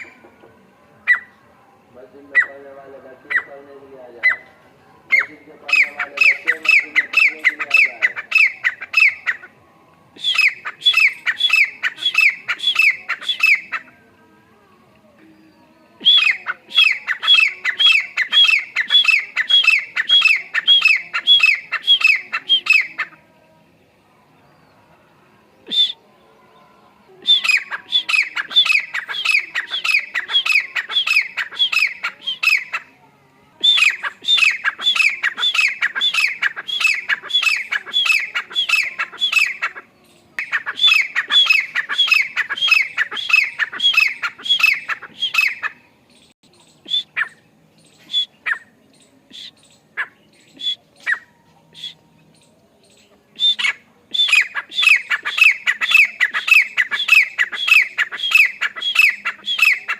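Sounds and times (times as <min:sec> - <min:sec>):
bird calling in rapid notes: 0:05.1 - 0:09.5, 0:10.2 - 0:13.9, 0:16.0 - 0:23.2, 0:27.3 - 0:32.9, 0:33.6 - 0:45.8, 0:53.4 - 0:59.9.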